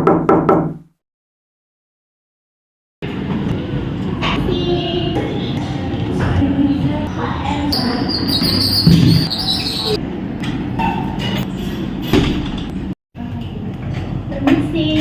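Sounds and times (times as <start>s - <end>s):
busy room noise: 3.0s - 15.0s
indistinct background voices: 3.1s - 10.0s.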